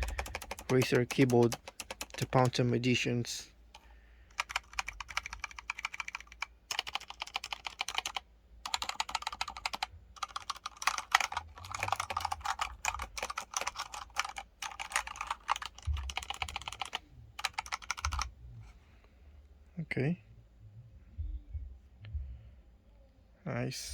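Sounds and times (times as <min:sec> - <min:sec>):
fast typing on mechanical keyboard: 0:00.0 - 0:02.9, 0:04.3 - 0:18.3.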